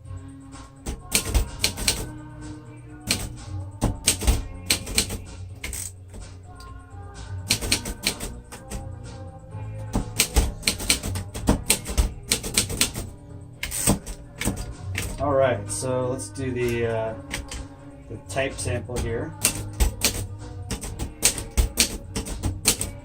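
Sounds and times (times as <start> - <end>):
background music: 0.0 - 23.0
manual typewriter typing: 0.8 - 2.2, 3.0 - 6.3, 7.5 - 8.9, 9.9 - 15.2, 17.2 - 17.7, 18.6 - 23.0.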